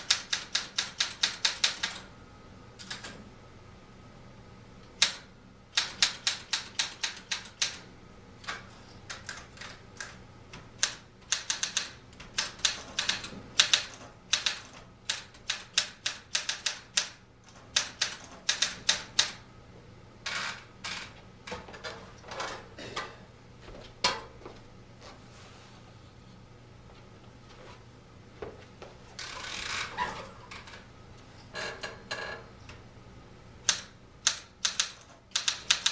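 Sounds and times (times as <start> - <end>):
typewriter key strikes: 0.0 - 2.0, 5.8 - 7.8, 10.8 - 19.4, 33.7 - 35.9
soft typewriter mechanical sounds: 0.0 - 2.1, 5.0 - 19.4, 33.6 - 35.9.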